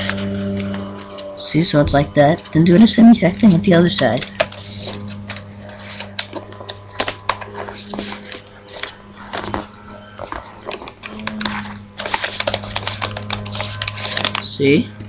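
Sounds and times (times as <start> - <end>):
paper rustling and crinkling: 0.0 - 14.6
low electrical hum: 0.0 - 15.0.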